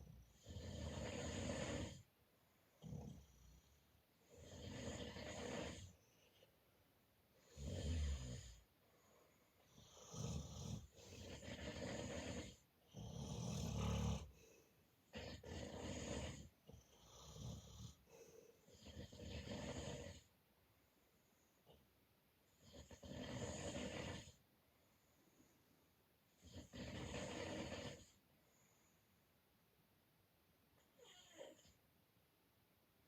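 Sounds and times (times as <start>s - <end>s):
person snoring: 0.3s - 2.1s, 4.2s - 6.0s, 7.4s - 8.6s, 9.6s - 20.3s, 22.6s - 24.4s, 26.4s - 28.2s.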